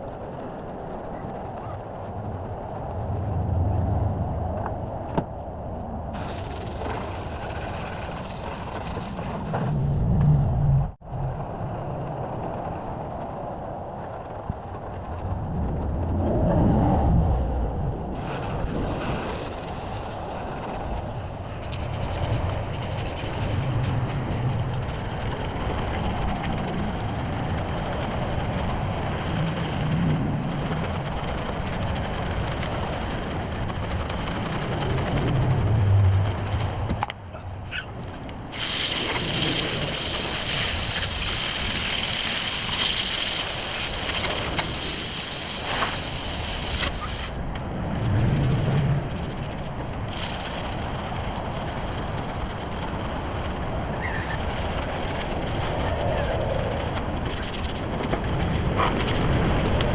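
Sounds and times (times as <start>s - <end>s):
pressure washer spray hissing: 38.5s - 44.0s, 44.6s - 47.4s.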